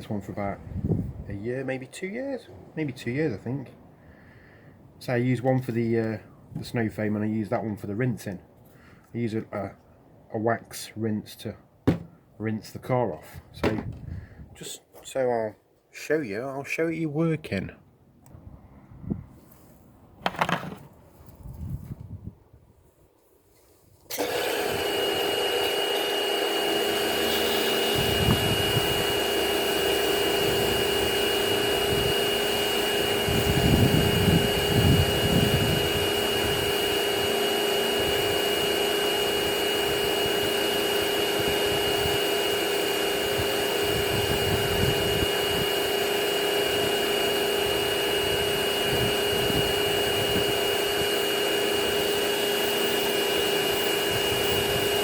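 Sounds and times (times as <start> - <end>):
pressure washer motor whine: 11.9 - 12.1, 24.1 - 55.0.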